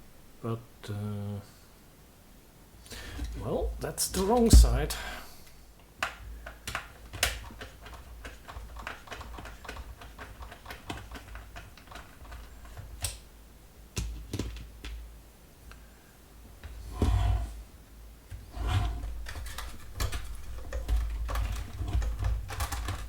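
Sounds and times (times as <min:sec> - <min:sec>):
plastic parts clicking and knocking: 0:06.0 - 0:13.3, 0:14.0 - 0:15.0, 0:19.0 - 0:23.0.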